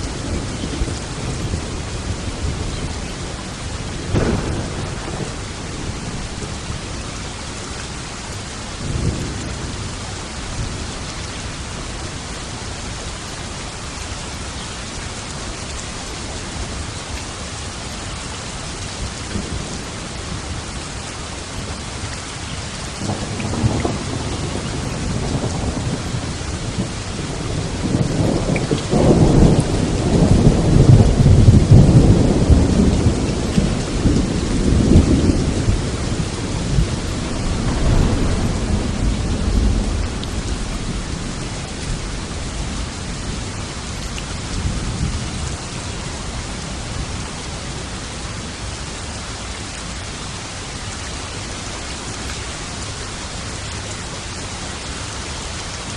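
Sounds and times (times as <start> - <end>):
heavy rain: 0.0 - 55.9
thunder rolling: 4.0 - 7.0, 23.0 - 43.5.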